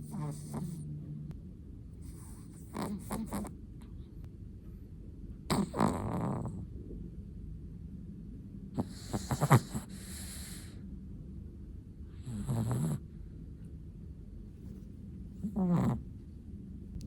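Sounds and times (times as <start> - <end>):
dog snoring: 0.0 - 0.9, 2.0 - 3.6, 5.5 - 6.7, 8.8 - 10.8, 12.1 - 13.1, 15.4 - 16.1.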